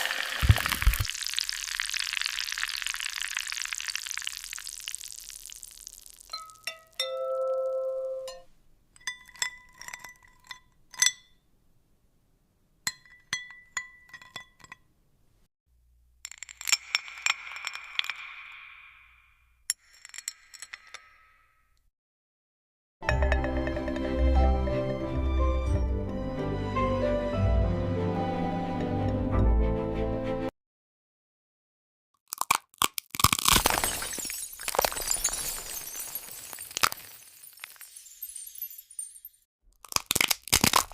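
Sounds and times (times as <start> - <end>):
glass clinking: 6.3 - 11.5, 12.9 - 14.9, 23.0 - 24.3, 33.7 - 39.4.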